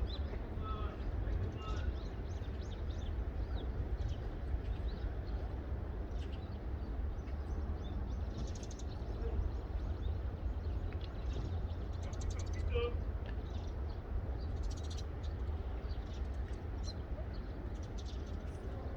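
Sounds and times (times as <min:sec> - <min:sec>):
small birds chirping: 0:06.1 - 0:18.7.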